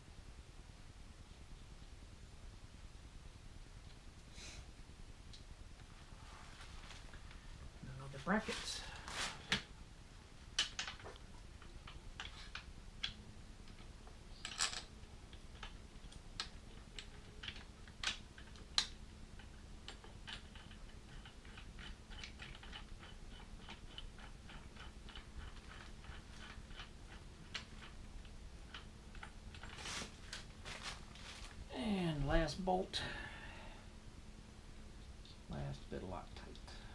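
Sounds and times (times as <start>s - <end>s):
small evenly spaced ticks: 10.6s - 29.8s.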